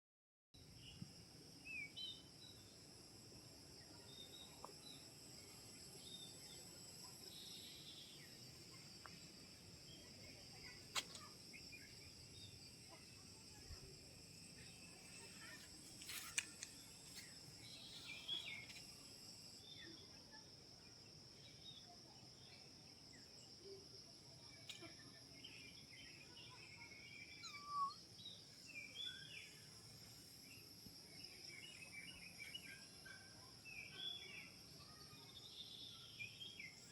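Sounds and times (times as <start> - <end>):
short bird chirps: 27.4 - 28.0.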